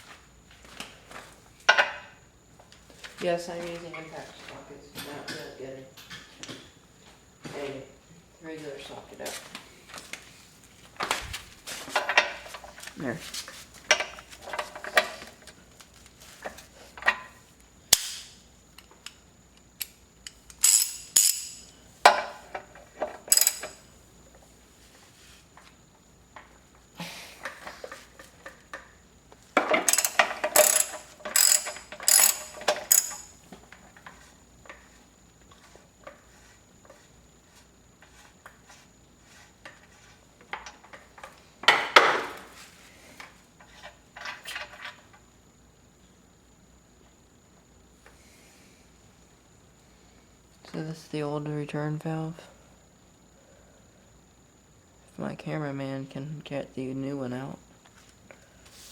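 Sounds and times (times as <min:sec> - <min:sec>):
ratchet wrench clicking: 0:19.8 - 0:21.7, 0:23.3 - 0:23.8, 0:29.8 - 0:33.3.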